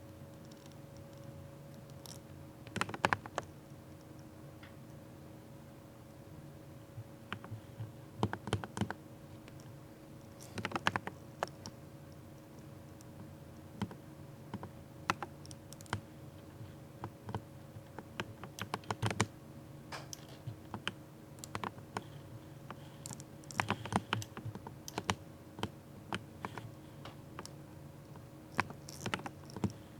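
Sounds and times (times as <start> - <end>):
faint steady hum: 0.0 - 29.9
mechanical keyboard typing: 2.0 - 3.5, 8.2 - 9.0, 10.4 - 11.7, 17.0 - 19.3, 20.1 - 26.7, 28.5 - 29.8.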